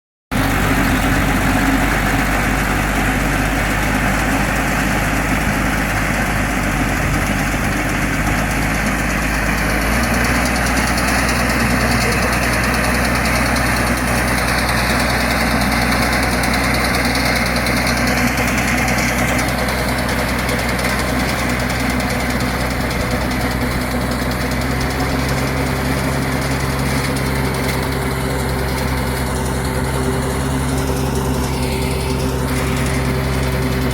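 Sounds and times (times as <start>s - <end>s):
tractor engine running: 0.3s - 33.9s.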